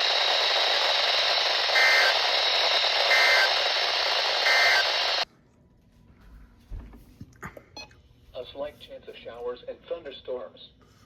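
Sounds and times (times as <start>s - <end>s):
radio static hissing: 0.0s - 5.2s
warbling data tones: 0.0s - 5.2s.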